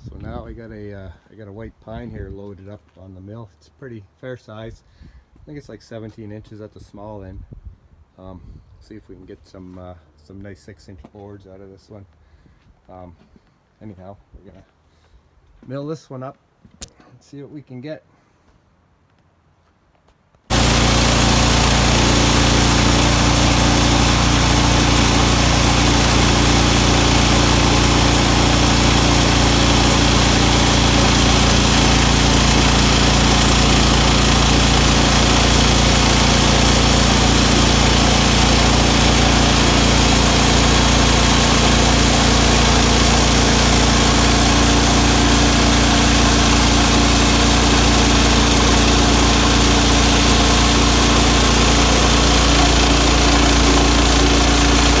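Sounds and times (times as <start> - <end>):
sawmill engine droning: 20.5 - 55.0.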